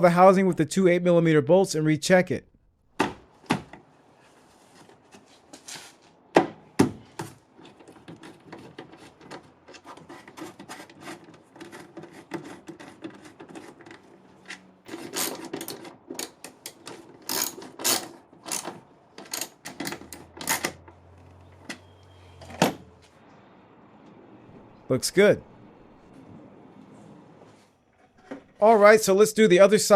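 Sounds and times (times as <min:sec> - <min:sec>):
ratchet wrench clicking: 0:17.3 - 0:18.7.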